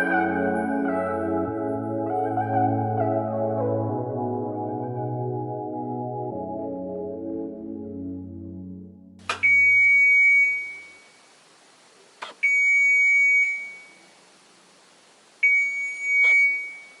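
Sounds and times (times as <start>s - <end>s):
washing machine long high beeps: 9.3s - 11.2s, 12.4s - 14.1s, 15.4s - 17.0s.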